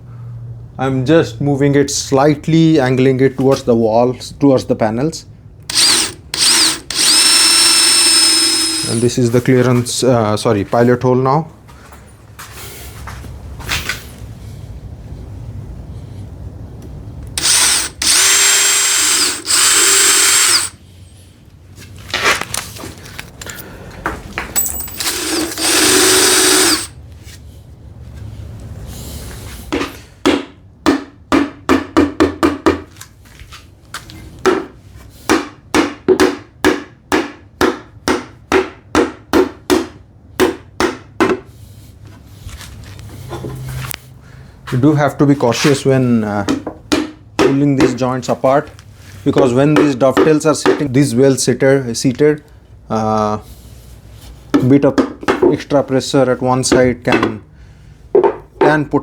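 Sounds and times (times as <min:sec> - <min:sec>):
power drill boring into wood: 0:05.7 - 0:09.1, 0:17.4 - 0:20.8, 0:24.6 - 0:26.9.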